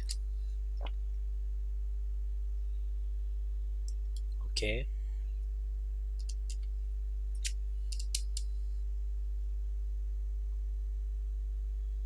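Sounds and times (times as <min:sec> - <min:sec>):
low electrical hum: 0:00.0 - 0:12.0
computer mouse clicks: 0:07.4 - 0:08.4.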